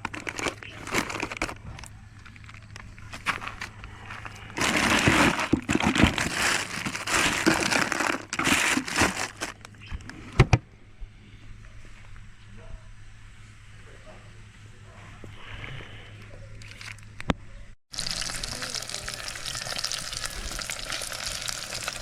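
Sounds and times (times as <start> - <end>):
packaging crinkling and rustling: 0.0 - 9.8.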